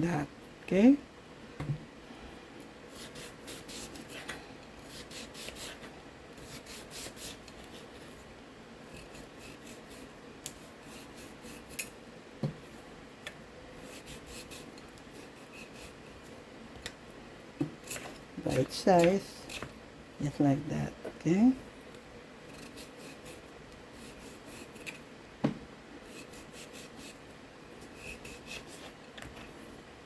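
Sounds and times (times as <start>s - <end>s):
knife scraping papaya: 2.9s - 8.1s, 8.9s - 11.9s, 13.8s - 16.0s, 22.5s - 25.0s, 26.0s - 27.2s, 27.8s - 29.0s
dull knock: 25.4s - 25.6s.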